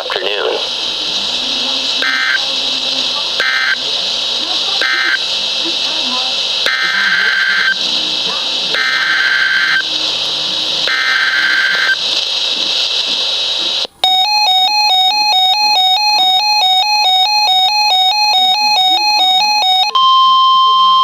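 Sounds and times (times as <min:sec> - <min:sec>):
buzzy digital data bursts: 0:00.7 - 0:13.8
electronic alert tone warbling: 0:08.7 - 0:10.1.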